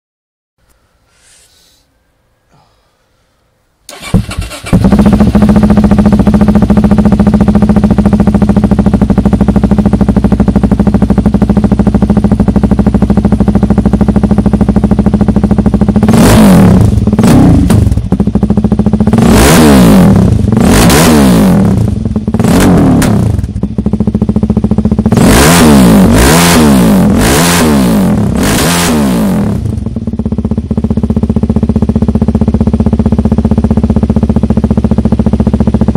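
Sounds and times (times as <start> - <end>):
motorcycle engine idling: 3.9 - 20.7, 21.5 - 25.4, 29.4 - 35.9
engine revving: 3.9 - 23.6, 24.9 - 30.0
motorcycle engine starting: 3.9 - 35.9.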